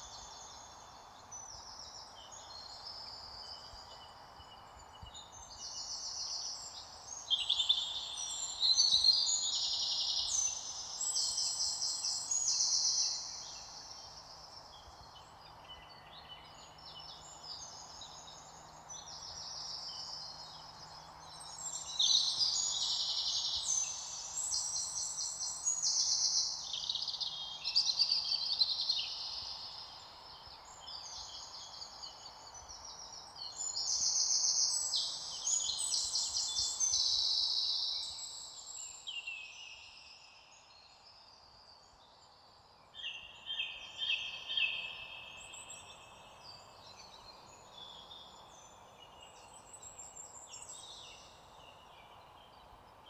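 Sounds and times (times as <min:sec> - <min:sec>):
soft outdoor hiss: 0:00.0 - 0:53.0
songbirds singing and chirping: 0:00.0 - 0:53.0.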